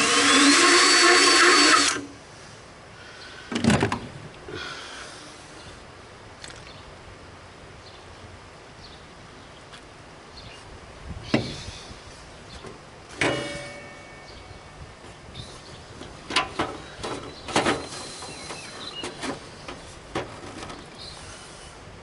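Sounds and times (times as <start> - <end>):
parts knocking and clunking: 3.5 - 4.1, 12.6 - 14.2, 16.0 - 21.0
struck metal ringing: 13.2 - 14.6.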